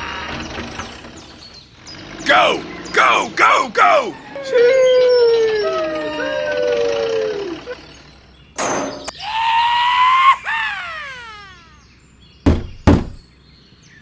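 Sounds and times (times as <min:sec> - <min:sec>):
pitched tone gliding downward: 0:04.3 - 0:08.0
sharp thuds: 0:12.5 - 0:13.2.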